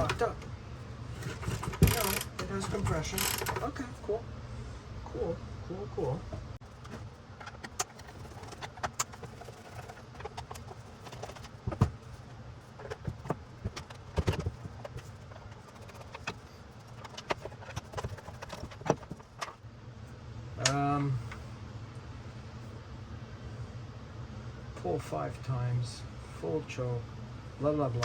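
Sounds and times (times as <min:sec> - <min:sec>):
low steady hum: 0:00.0 - 0:28.0
clicks and knocks of handling: 0:01.2 - 0:03.7, 0:06.7 - 0:12.1, 0:12.8 - 0:19.6.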